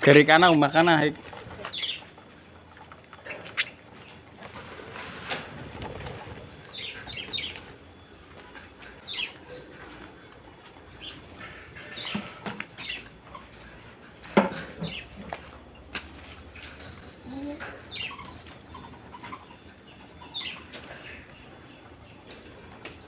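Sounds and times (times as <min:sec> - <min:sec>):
birds flapping wings: 0:01.2 - 0:10.4
parakeet chirps: 0:03.6 - 0:03.8.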